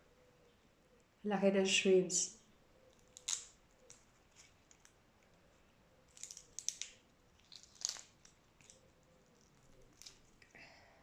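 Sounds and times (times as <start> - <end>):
shrimp shells crackling: 3.0 - 5.0, 6.1 - 10.5.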